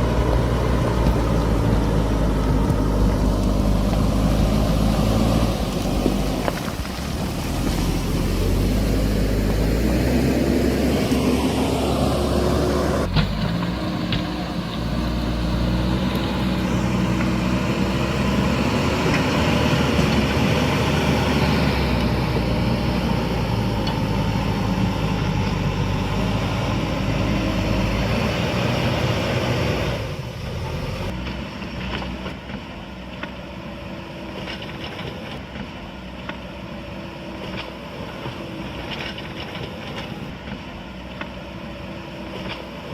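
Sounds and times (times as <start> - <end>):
diesel engine working: 0.0 - 42.9.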